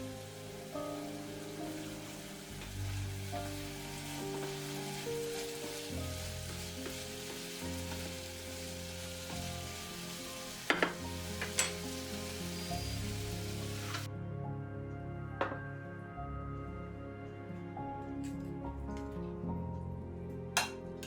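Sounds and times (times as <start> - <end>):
food sizzling in a pan: 0.0 - 14.1.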